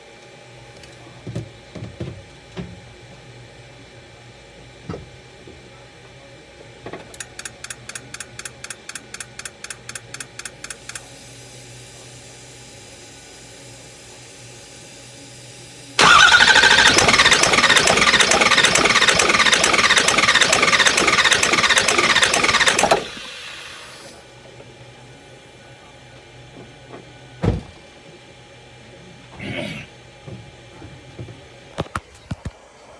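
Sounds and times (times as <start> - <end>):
injectors clicking: 16.0 - 24.0
starter cranking engine: 16.0 - 24.5.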